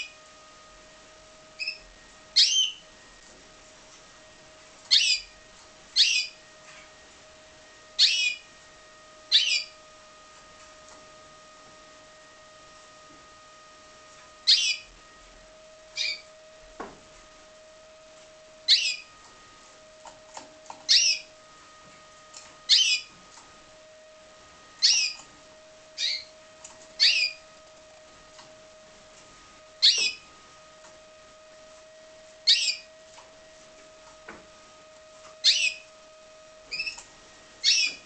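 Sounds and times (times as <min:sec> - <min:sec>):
faint steady hum: 0:00.0 - 0:38.0
canary singing: 0:01.5 - 0:02.9, 0:04.8 - 0:06.4, 0:08.0 - 0:08.6, 0:09.3 - 0:09.8, 0:14.4 - 0:15.0, 0:15.9 - 0:16.3, 0:18.6 - 0:19.2, 0:20.3 - 0:21.4, 0:22.6 - 0:23.2, 0:24.8 - 0:25.3, 0:26.0 - 0:28.0, 0:29.8 - 0:30.3, 0:32.4 - 0:33.1, 0:35.4 - 0:36.0, 0:36.6 - 0:38.0.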